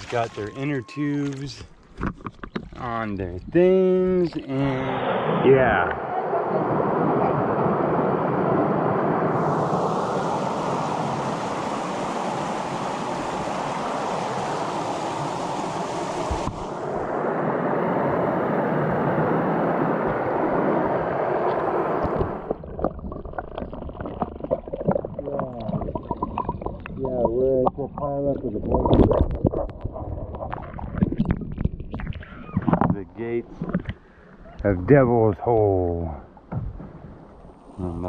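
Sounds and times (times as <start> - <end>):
creek water rushing: 6.4 - 22.6.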